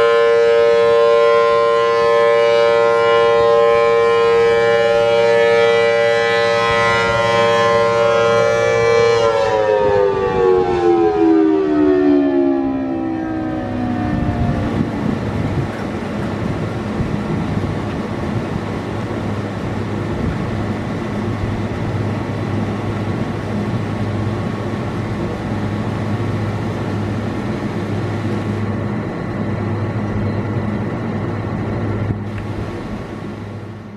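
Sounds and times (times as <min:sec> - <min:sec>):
siren winding down: 0:00.0 - 0:15.6
low hum with rushing noise: 0:12.3 - 0:33.9.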